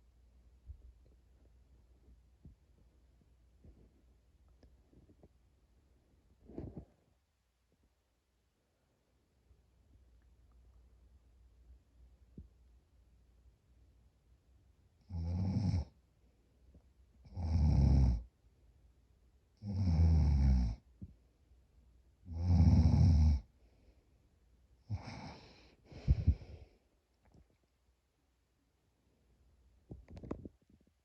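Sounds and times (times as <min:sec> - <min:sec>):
person snoring heavily: 0:22.3 - 0:23.4, 0:24.9 - 0:26.6.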